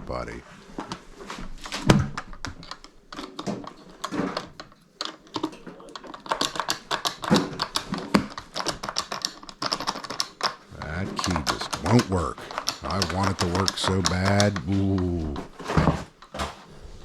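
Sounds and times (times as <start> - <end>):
key rattling in a lock: 2.4 - 14.7.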